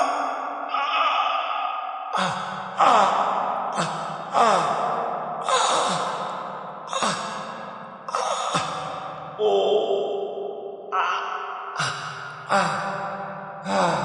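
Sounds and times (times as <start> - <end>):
person crying out in pain: 2.2 - 7.5, 8.1 - 9.9.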